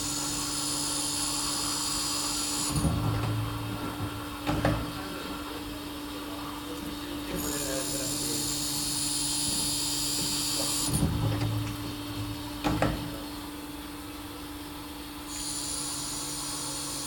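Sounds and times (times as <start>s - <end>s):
machine hum: 0.4s - 17.0s.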